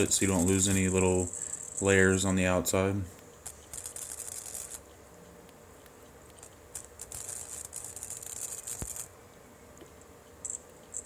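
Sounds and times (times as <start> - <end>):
welder arc crackling and sizzling: 0.0 - 2.8, 6.4 - 9.1
faint steady hum: 0.0 - 11.0.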